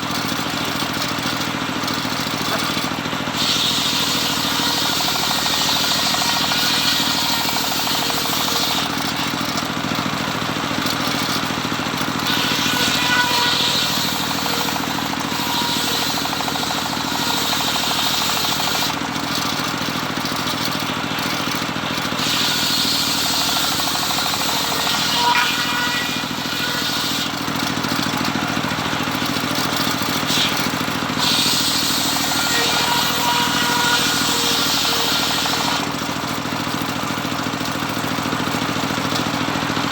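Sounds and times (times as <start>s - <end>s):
circular saw running: 0.0s - 39.9s
saw blade ripping through wood: 0.8s - 36.0s.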